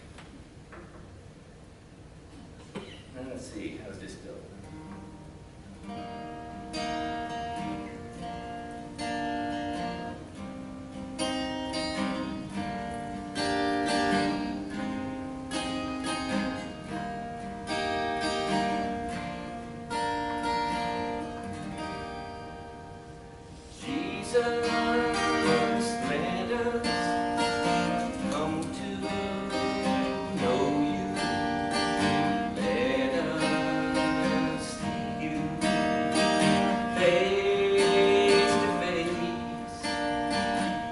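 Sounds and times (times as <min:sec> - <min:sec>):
acoustic guitar strummed and picked: 0:04.6 - 0:40.9.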